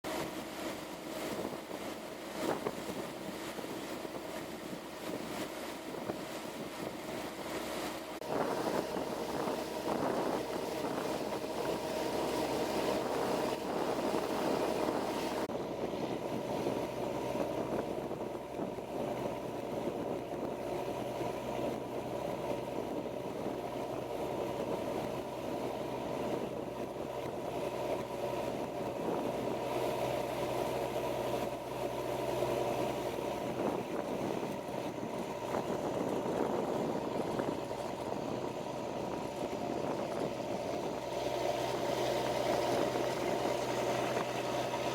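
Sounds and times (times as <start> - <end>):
water rushing and splashing: 0.1 - 19.9, 27.6 - 44.9
boat engine droning: 0.1 - 44.9.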